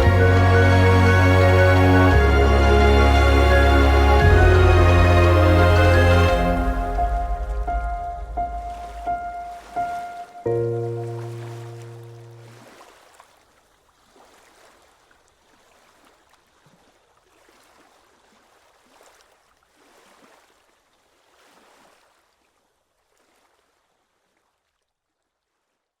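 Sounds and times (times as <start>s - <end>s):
small waves lapping at shore: 6.4s - 25.8s.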